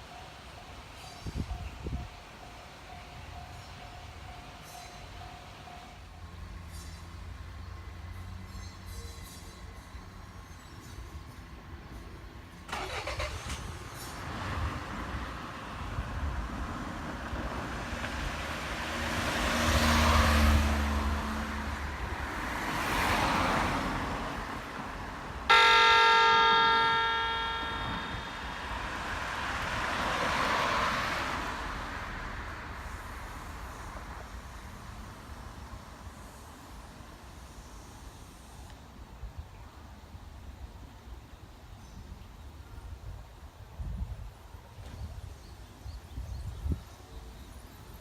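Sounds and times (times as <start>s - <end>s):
vehicles passing: 14.0s - 34.4s
loud horn blast: 25.5s - 29.6s.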